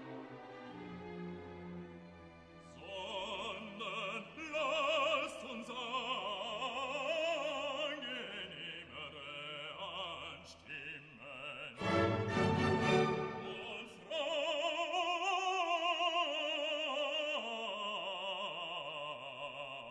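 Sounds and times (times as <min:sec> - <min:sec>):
orchestral accompaniment: 0:00.0 - 0:02.8, 0:11.8 - 0:14.0
operatic voice singing: 0:02.8 - 0:19.9.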